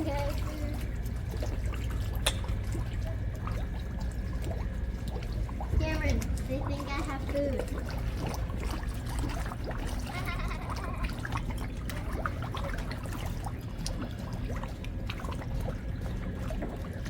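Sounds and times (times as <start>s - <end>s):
steady low rumble: 0.0s - 17.0s
water splashing and trickling: 0.0s - 17.0s
small plops on water: 1.1s - 6.5s.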